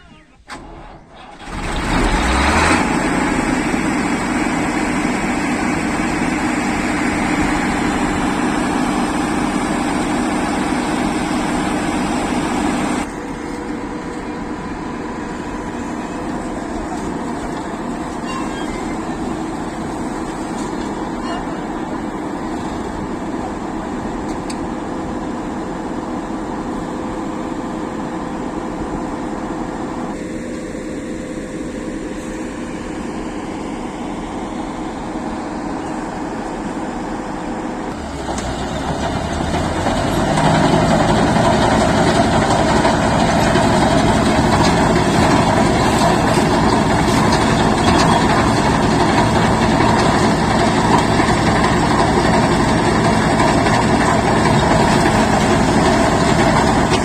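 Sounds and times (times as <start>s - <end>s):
combine harvester engine running: 0.0s - 57.0s.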